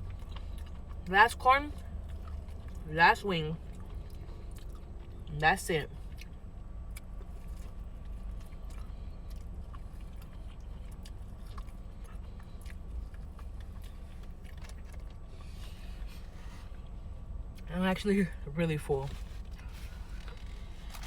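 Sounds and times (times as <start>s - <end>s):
person chewing food: 0.0s - 1.1s, 1.7s - 2.9s, 3.6s - 5.3s, 5.9s - 17.7s
low car interior hum: 0.0s - 21.0s.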